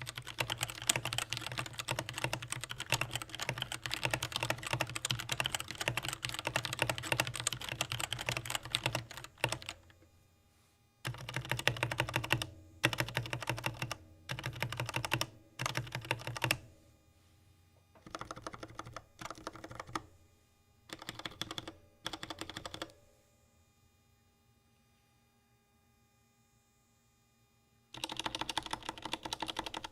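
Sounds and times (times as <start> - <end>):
mechanical keyboard typing: 0.0 - 10.0, 11.0 - 16.6, 18.0 - 20.1, 20.9 - 23.0, 28.0 - 29.9.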